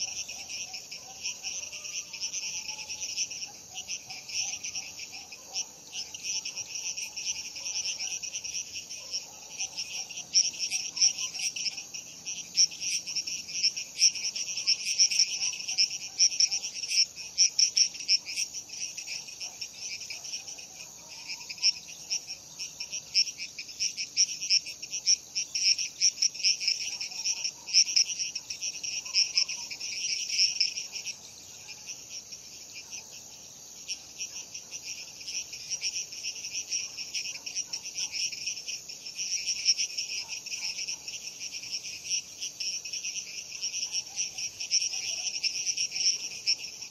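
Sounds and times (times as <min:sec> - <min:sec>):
faint frog calls: 0:00.0 - 0:33.2
crickets chirping: 0:00.0 - 0:46.9.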